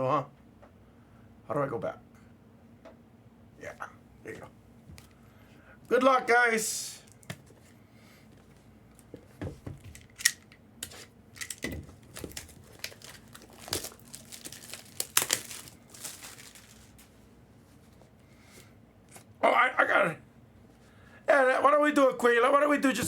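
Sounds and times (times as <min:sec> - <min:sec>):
packaging tearing and crinkling: 0:09.9 - 0:17.1.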